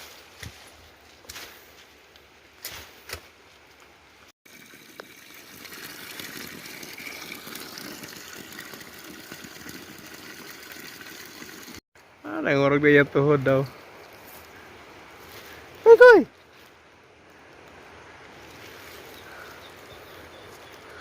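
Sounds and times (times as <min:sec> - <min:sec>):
rushing flowing water: 0:04.5 - 0:11.8.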